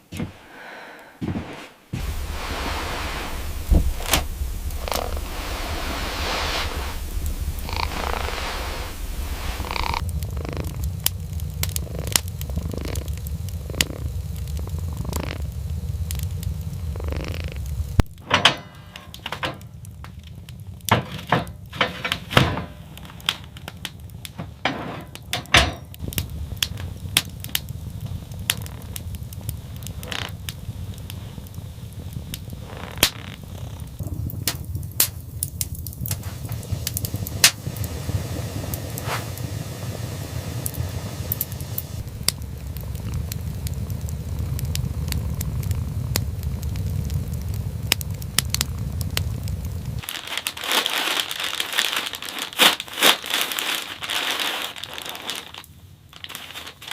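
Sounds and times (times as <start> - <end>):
wood fire crackling: 0.0 - 56.9
low rumble: 1.9 - 50.4.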